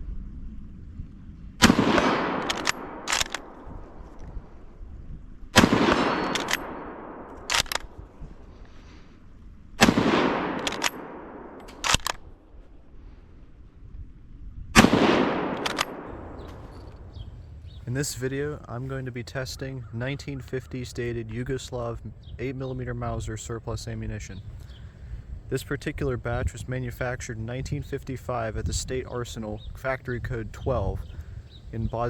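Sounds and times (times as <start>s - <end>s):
rifle bolt metallic clicks: 1.6s - 4.3s, 5.6s - 8.1s, 9.8s - 12.4s, 15.4s - 17.1s
rifle shots echoing: 1.6s - 4.8s, 5.5s - 12.9s, 14.8s - 17.4s.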